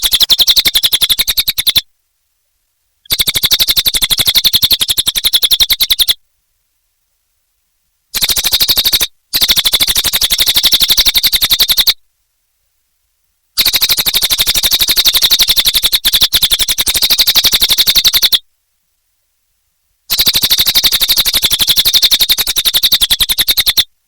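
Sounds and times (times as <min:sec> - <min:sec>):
songbird singing fast trills: 0:00.0 - 0:01.9, 0:03.1 - 0:06.2, 0:08.1 - 0:12.0, 0:13.6 - 0:18.4, 0:20.1 - 0:23.9.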